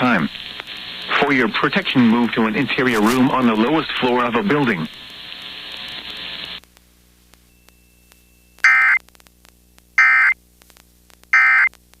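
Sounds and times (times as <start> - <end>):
digital data tone bursts: 8.3 - 9.0, 10.0 - 10.4, 11.3 - 11.7.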